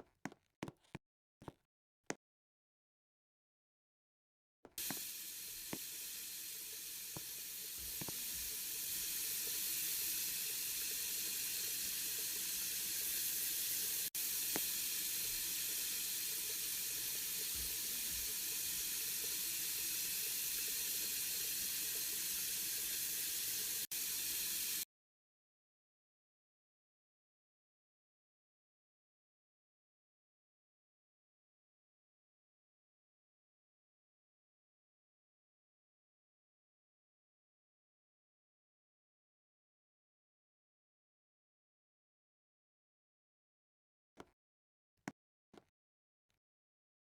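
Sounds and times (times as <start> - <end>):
water rushing into washing machine: 4.7 - 24.8.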